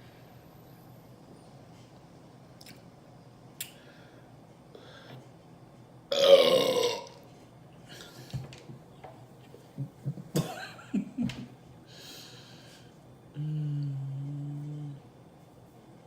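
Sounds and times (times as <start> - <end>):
low steady throat hum: 11.8 - 15.5.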